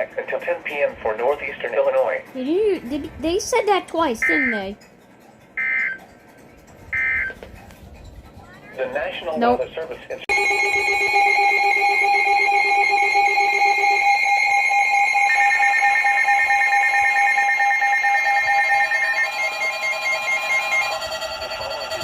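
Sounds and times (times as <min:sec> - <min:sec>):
overlapping electronic alert beeps: 0:04.1 - 0:04.8, 0:05.6 - 0:06.0, 0:06.9 - 0:07.4
warbling tone: 0:10.3 - 0:22.0.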